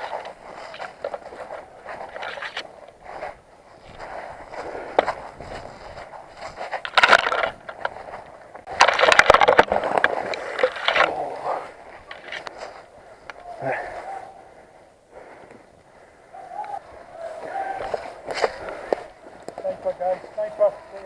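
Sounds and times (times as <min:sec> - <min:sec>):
gear rustling and rubbing: 0:00.0 - 0:13.0
footsteps: 0:00.0 - 0:13.5, 0:16.8 - 0:21.0.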